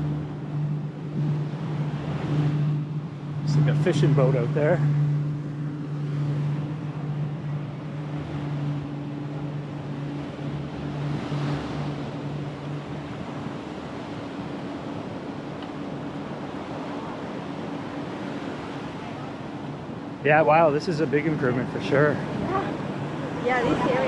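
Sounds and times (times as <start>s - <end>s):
wave breaking: 0.0s - 24.0s
surf washing onto beach: 6.0s - 24.0s.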